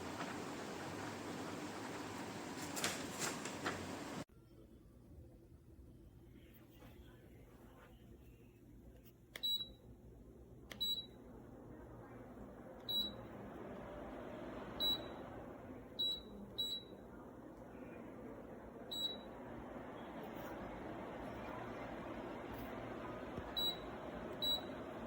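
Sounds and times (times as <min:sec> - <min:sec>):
fan airflow rushing: 0:00.0 - 0:04.3, 0:11.3 - 0:25.0
fan button beeps: 0:09.4 - 0:09.8, 0:10.7 - 0:11.2, 0:12.8 - 0:13.2, 0:14.8 - 0:15.3, 0:16.0 - 0:17.0, 0:18.9 - 0:19.4, 0:23.4 - 0:25.0.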